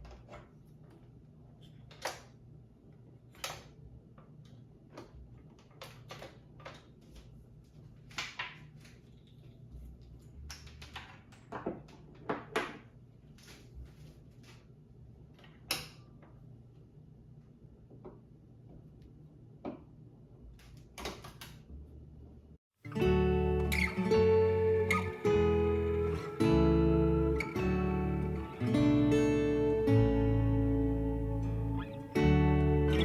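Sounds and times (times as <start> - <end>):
low steady hum: 22.2 - 33.0.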